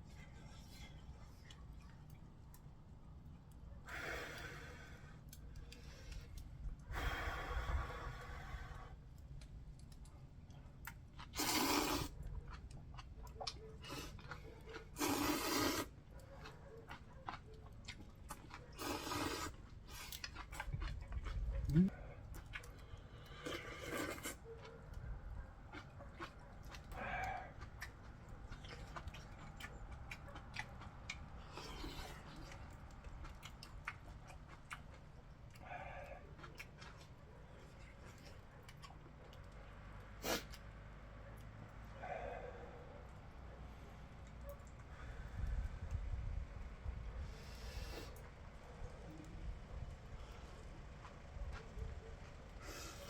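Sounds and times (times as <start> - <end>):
soft chewing: 0.0 - 53.0
loud noodle slurp: 11.2 - 12.6, 13.8 - 16.0, 18.8 - 20.7, 23.3 - 24.4, 40.2 - 40.6.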